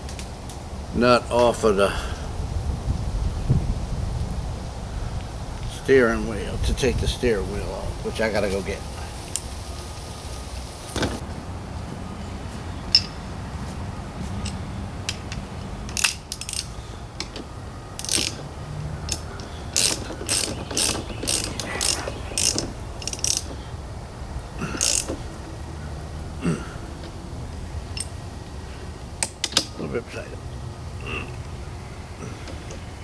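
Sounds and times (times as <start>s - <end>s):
socket ratchet wrench clicking: 15.9s - 17.4s, 18.0s - 18.4s, 19.1s - 23.6s, 24.8s - 25.2s.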